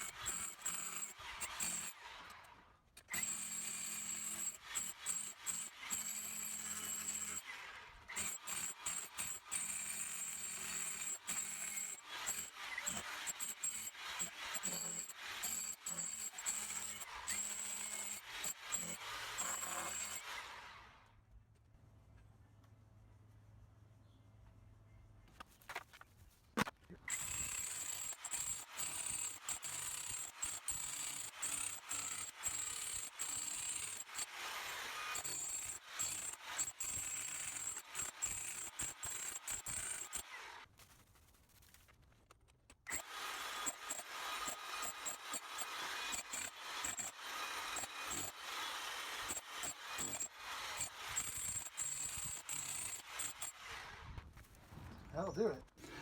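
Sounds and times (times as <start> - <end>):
rotary hammer chiselling: 42.8 - 53.9.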